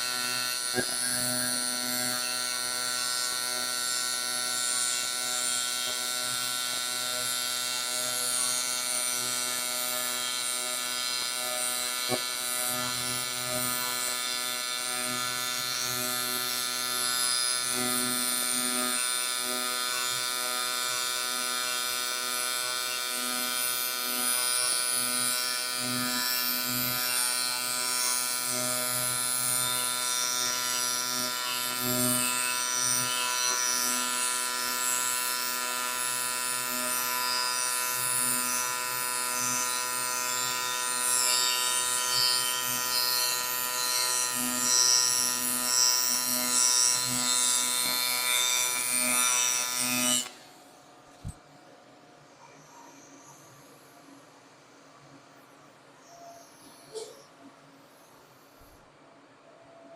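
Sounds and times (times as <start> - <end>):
welding arc buzz and hiss: 0.0 - 51.4.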